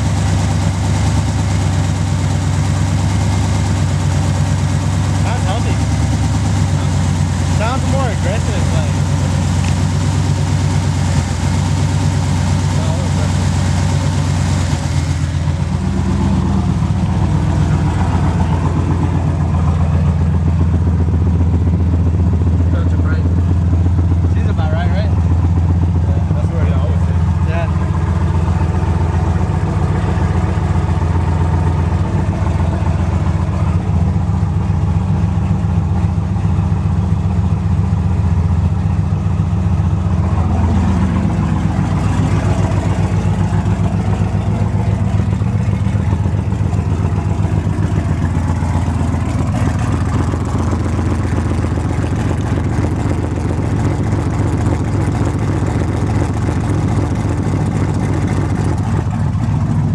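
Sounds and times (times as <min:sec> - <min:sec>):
pickup truck engine running: 0:00.0 - 0:59.9.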